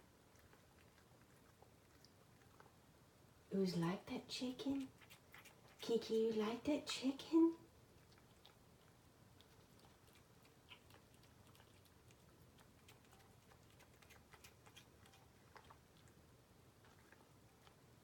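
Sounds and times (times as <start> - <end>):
cat chewing raw meat: 0.0 - 3.5, 4.3 - 18.0.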